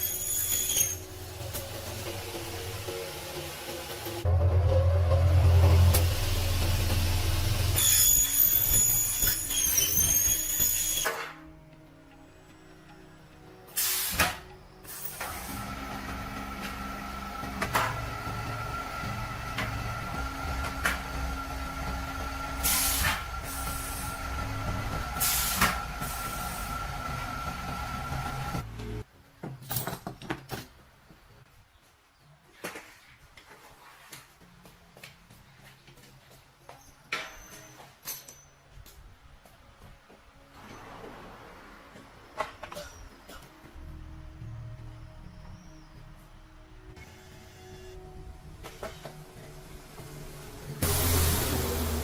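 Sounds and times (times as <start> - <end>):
machine humming and whining: 14.6 - 29.0.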